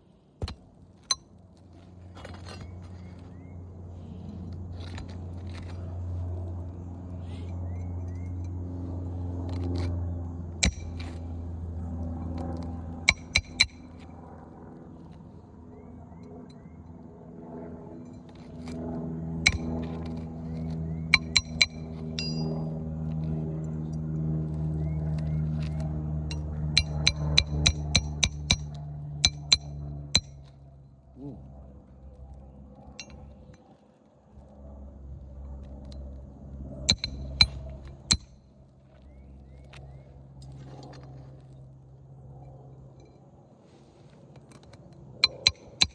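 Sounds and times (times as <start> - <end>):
steady low rumble: 0.0 - 45.8
low hum: 0.0 - 45.9
hammer striking nails: 10.6 - 11.1, 13.1 - 13.8, 21.2 - 22.4, 26.8 - 30.4, 36.9 - 38.3.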